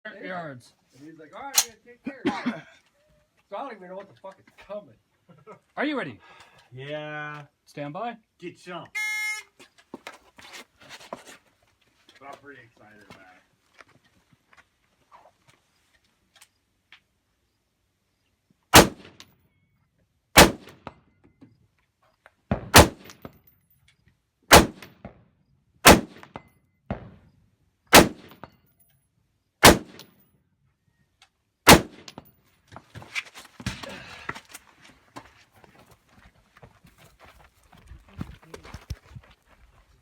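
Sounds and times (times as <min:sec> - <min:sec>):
rifle shots: 0:18.7 - 0:19.2, 0:20.4 - 0:20.9, 0:22.5 - 0:23.2, 0:24.5 - 0:25.1, 0:25.8 - 0:27.2, 0:27.9 - 0:28.5, 0:29.6 - 0:30.1, 0:31.7 - 0:32.2
scuffing noise: 0:32.7 - 0:40.0.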